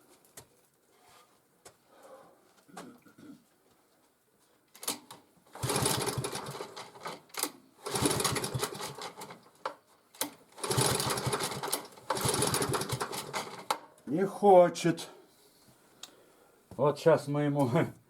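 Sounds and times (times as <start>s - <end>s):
recoil starter pull: 4.8s - 9.5s, 10.2s - 13.8s
small engine turning over rattling: 5.5s - 9.5s, 10.5s - 13.8s.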